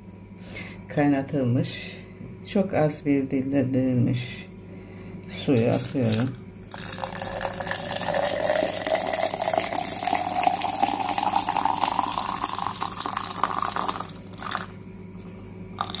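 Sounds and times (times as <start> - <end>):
hot water pouring into container: 5.7 - 14.8, 15.8 - 16.0.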